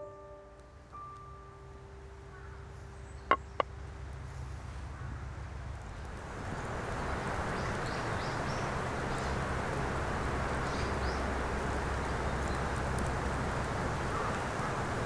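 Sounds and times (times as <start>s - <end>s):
distant sea waves: 4.9s - 15.0s.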